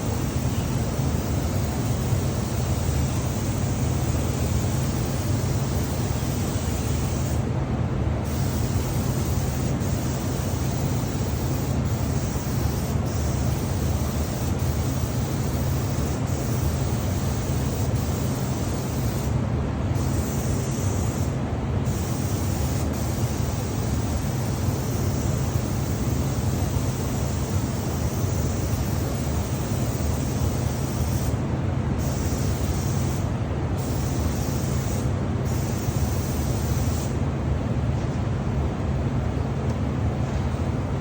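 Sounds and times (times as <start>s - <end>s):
low hum of compressed air: 0.0s - 38.4s
spray gun hissing: 8.3s - 19.4s.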